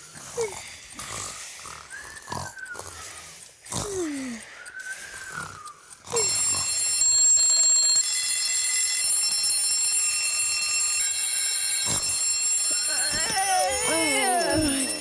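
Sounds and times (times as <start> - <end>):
soft whistling snoring: 0.0 - 6.4
cartoon alarm clocks ringing: 0.0 - 15.0.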